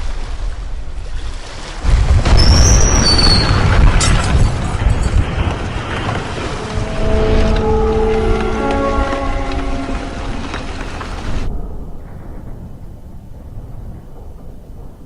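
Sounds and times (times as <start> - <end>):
loud deep rumble: 4.7 - 15.0.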